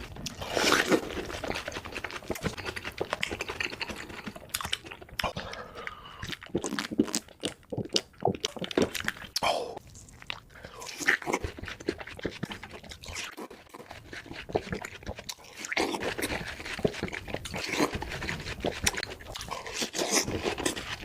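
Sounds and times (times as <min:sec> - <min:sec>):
crunchy chewing of frozen fruit: 0:00.0 - 0:21.0.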